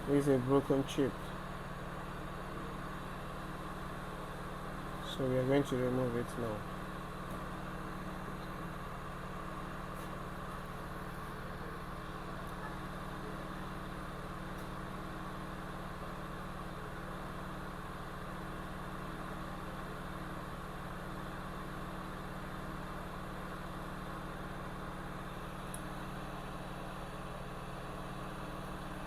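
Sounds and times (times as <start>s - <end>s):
hot air station fan humming: 0.0s - 29.0s.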